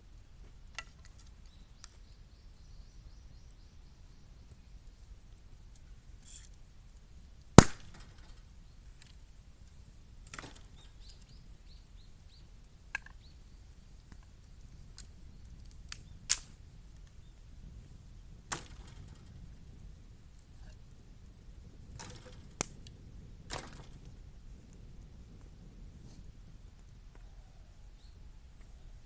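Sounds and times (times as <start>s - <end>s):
bamboo popping and cracking in fire: 0.1s - 2.1s, 4.4s - 27.4s.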